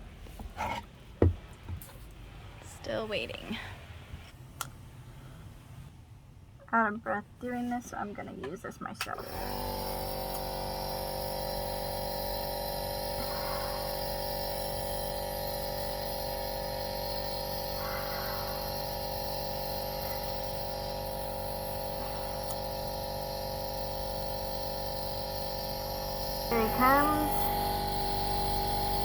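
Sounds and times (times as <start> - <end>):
air compressor humming: 9.2 - 29.0.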